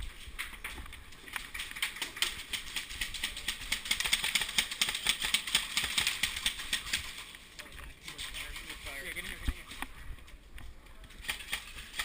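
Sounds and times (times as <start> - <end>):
airsoft guns firing: 1.6 - 7.2, 11.2 - 12.0.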